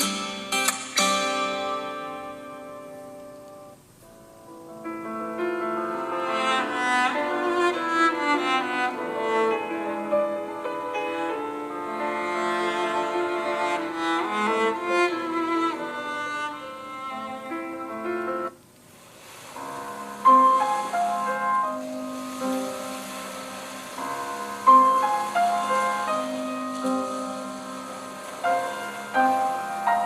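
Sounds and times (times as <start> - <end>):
ringtone melody with strings and piano: 0.0 - 3.8.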